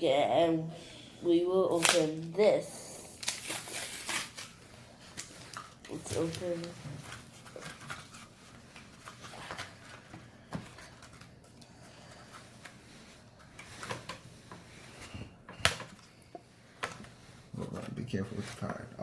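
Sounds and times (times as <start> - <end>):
card pack rustling and clicking: 3.2 - 11.6.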